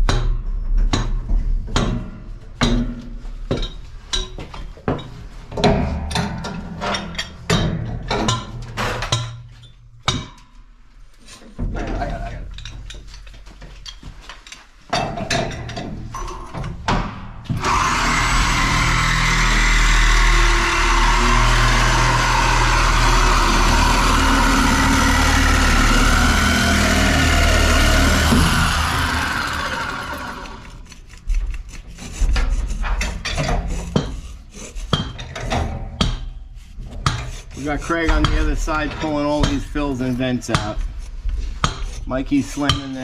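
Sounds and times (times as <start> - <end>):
metal pipe clanking: 3.5 - 10.4
power saw cutting metal: 17.6 - 31.1.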